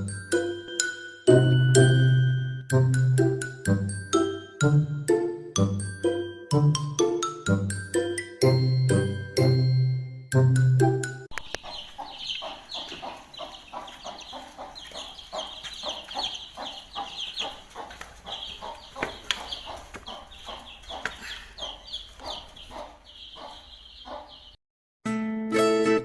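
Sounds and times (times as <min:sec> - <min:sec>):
chickens clucking: 0:11.3 - 0:24.6
chicks peeping: 0:11.3 - 0:24.6.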